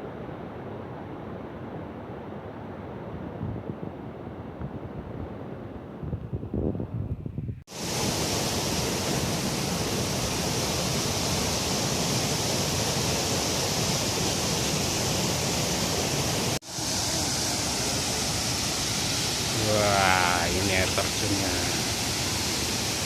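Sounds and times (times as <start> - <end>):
waterfall rushing: 7.7 - 23.0.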